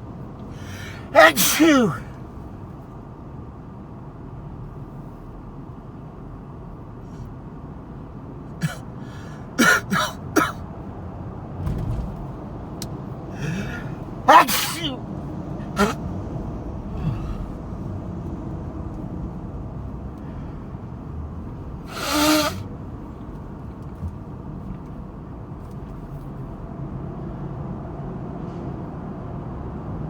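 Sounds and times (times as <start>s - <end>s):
car engine and road rumble: 0.0s - 30.0s
man sneezing: 0.6s - 2.2s, 8.6s - 10.6s, 13.3s - 15.0s, 15.6s - 16.1s, 16.9s - 17.6s, 21.9s - 22.6s.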